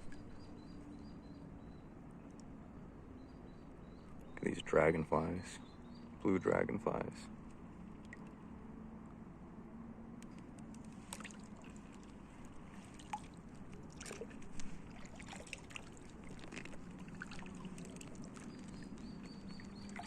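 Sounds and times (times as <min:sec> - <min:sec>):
water dripping off paddle: 0:10.7 - 0:20.0
paddle splashing water: 0:10.8 - 0:20.0.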